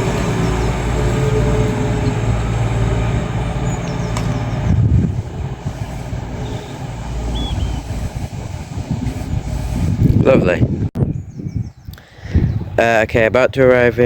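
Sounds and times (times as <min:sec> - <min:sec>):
diesel engines droning: 0:00.0 - 0:10.2.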